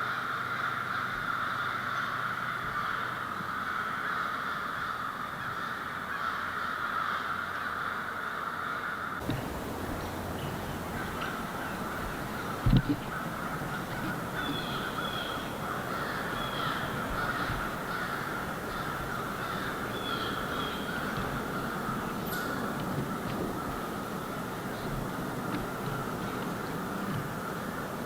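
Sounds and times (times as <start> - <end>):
crows cawing: 0.0 - 28.0
dull double thump: 11.9 - 14.9.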